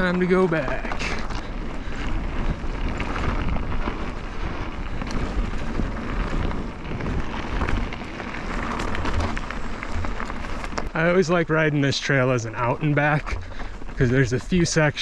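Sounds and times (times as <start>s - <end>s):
bike rattling clicks and knocks: 0.0s - 15.0s
mountain bike tyres rumbling: 0.0s - 15.0s
wind buffeting microphone: 0.0s - 15.0s.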